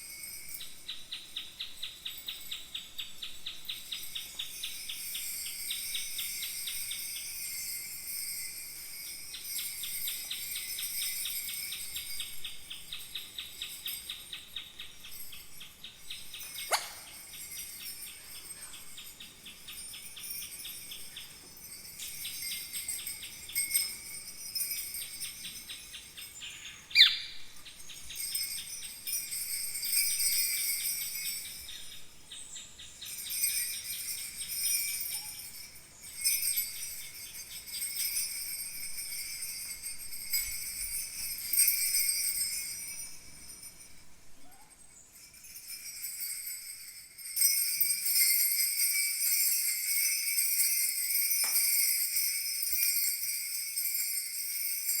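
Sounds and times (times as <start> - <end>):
bronze bells jingling: 0.0 - 55.0
insect-like chirping: 9.4 - 21.3, 25.0 - 29.2.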